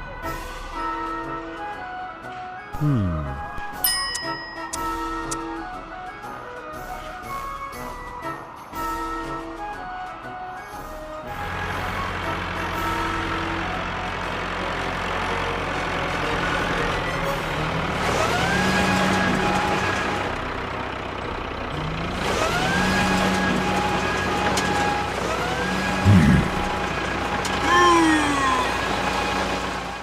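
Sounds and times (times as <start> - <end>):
truck engine running: 11.2 - 30.0
rising engine whine: 21.7 - 29.9.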